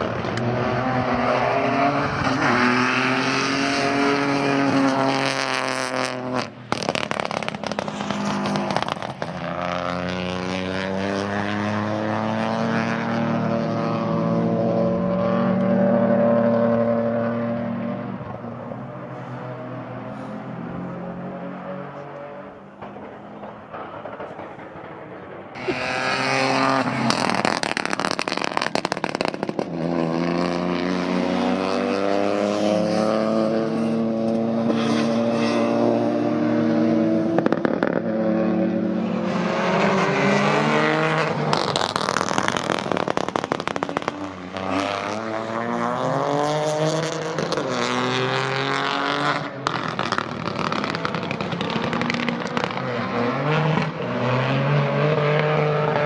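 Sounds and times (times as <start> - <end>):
racing car engine: 0.0 - 56.0
exhaust crackles and pops: 5.7 - 10.5, 22.0 - 30.1, 37.3 - 38.2, 40.6 - 45.8, 49.3 - 54.0.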